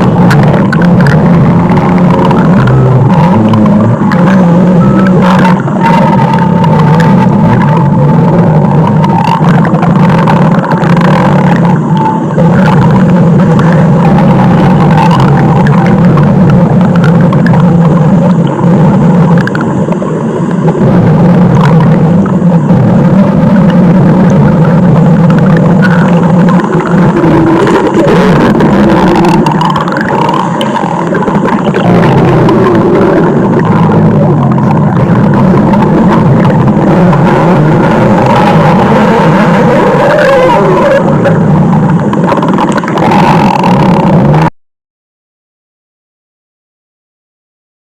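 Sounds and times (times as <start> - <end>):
stomach growling: 0.0 - 44.5.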